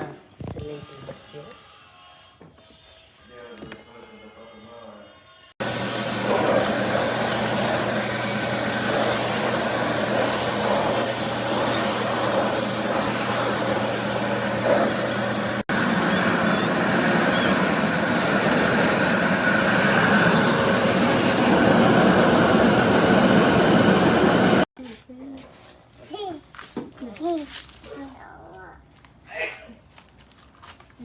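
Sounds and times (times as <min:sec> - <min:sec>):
vacuum cleaner running: 0:05.6 - 0:24.7.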